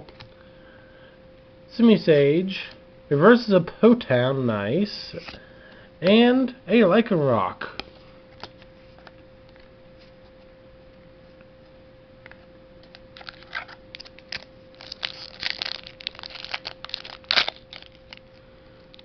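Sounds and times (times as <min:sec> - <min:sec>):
faint steady hum: 0:00.0 - 0:19.0
foil wrapper crinkling: 0:12.8 - 0:19.0.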